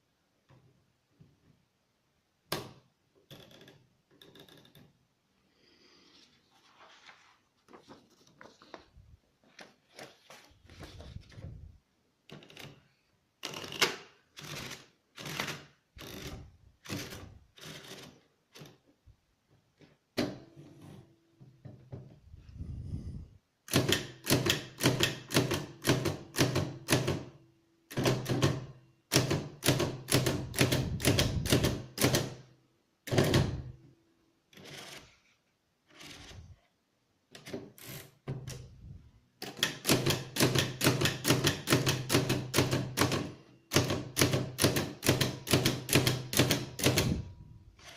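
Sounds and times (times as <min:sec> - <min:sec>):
typewriter keystrokes clattering: 0:39.4 - 0:47.1.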